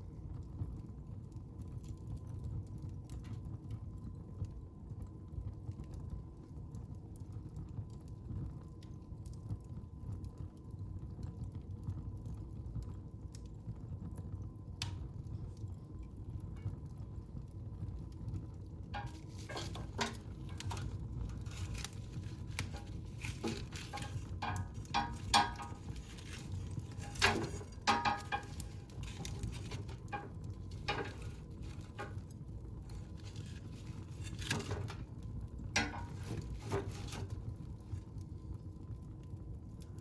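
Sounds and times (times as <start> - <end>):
low rumble of flames: 0.0 - 40.0
wood fire crackling and popping: 0.0 - 40.0.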